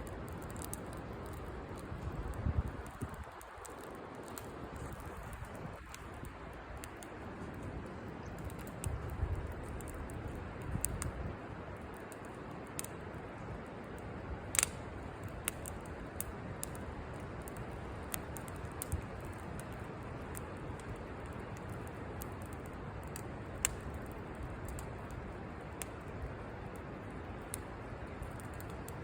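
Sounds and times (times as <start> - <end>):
campfire crackling and popping: 0.0 - 29.0.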